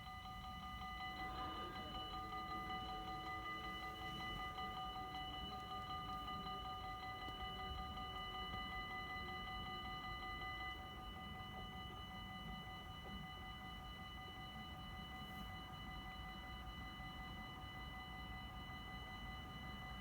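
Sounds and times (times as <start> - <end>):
level crossing bells ringing: 0.0 - 11.4.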